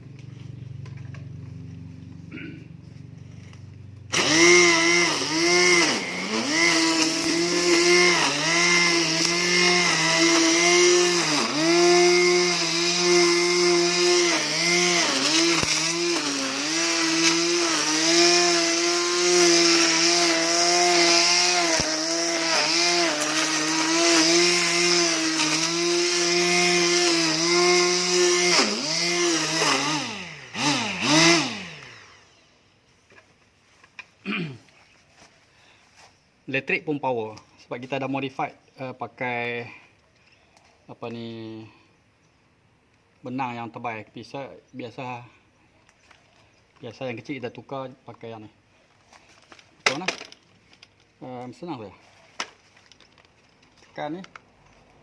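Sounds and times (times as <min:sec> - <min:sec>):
electric string trimmer whine: 0:00.1 - 0:32.8.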